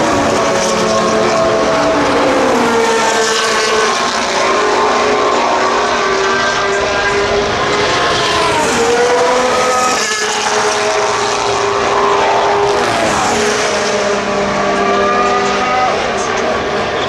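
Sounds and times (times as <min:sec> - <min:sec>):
racing car engines passing: 0:00.0 - 0:17.0.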